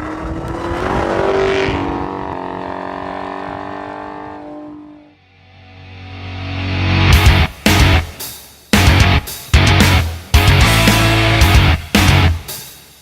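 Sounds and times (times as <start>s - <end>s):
car engine revving: 0.0s - 5.2s.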